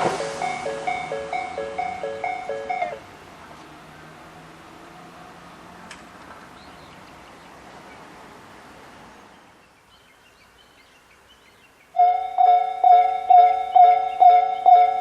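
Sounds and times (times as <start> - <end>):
level crossing warning bell: 0.1 - 3.0, 12.0 - 15.0
birds chirping: 0.2 - 8.2, 9.2 - 15.0.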